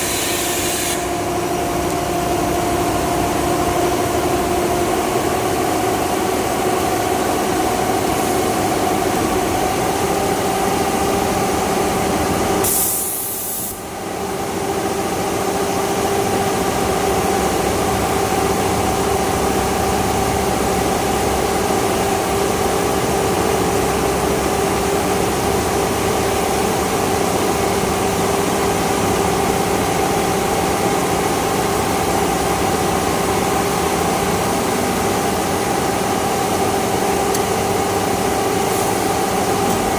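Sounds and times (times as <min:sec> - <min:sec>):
short high hiss: 0:12.6 - 0:13.8.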